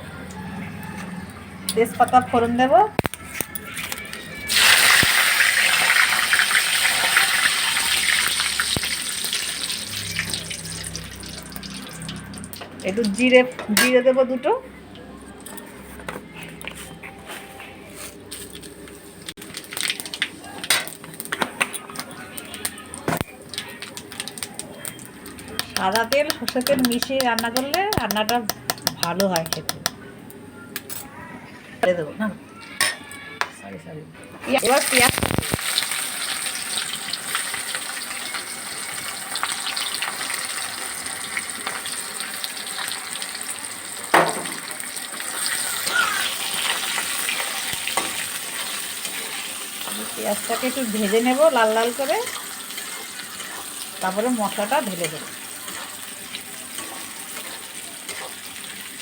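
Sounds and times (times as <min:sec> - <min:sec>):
spices crackling in hot oil: 0:04.5 - 0:13.3, 0:18.1 - 0:29.7, 0:34.5 - 0:59.0.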